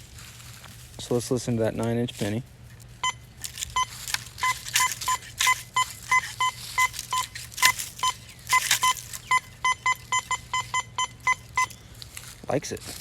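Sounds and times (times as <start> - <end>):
metal detector short beeps: 3.0 - 11.8.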